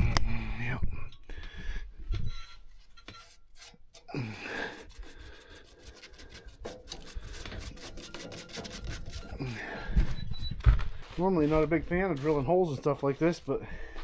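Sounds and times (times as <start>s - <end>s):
sawdust scraped over steel: 2.2s - 9.7s.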